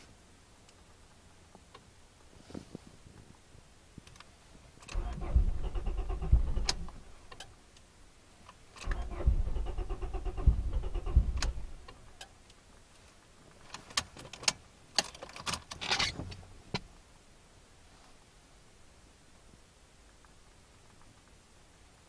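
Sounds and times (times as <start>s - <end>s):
car engine cranking on starter: 4.8s - 7.4s, 8.8s - 12.2s
sharp clicks: 8.8s - 12.6s.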